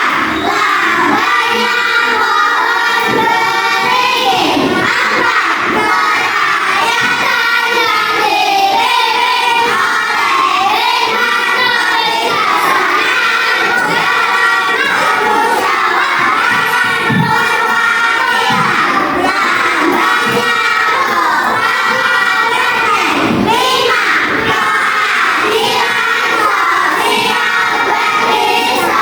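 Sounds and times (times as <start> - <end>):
children shouting and singing: 0.0 - 29.0.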